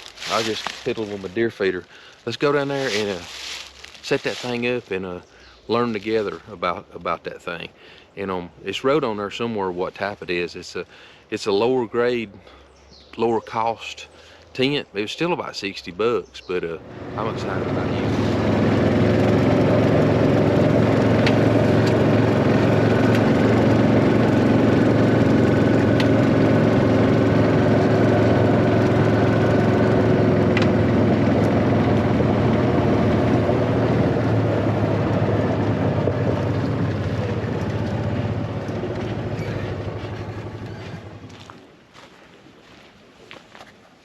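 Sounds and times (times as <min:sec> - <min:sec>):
vehicle engine running: 0:00.0 - 0:04.8, 0:16.7 - 0:41.5.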